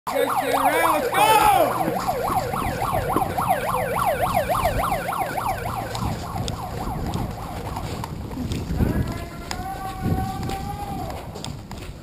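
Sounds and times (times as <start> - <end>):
electronic siren yelping: 0.1 - 8.2.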